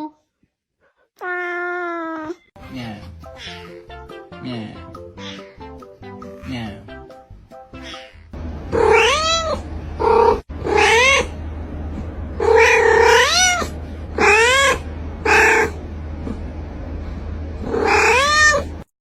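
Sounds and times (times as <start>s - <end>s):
cat meowing: 1.2s - 2.4s, 3.4s - 3.7s, 5.2s - 5.6s, 7.8s - 11.4s, 12.4s - 15.8s, 17.7s - 18.7s.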